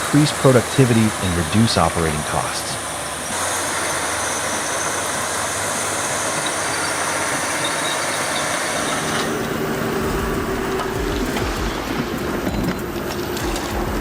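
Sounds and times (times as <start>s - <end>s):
heavy vehicle running: 0.0s - 14.0s.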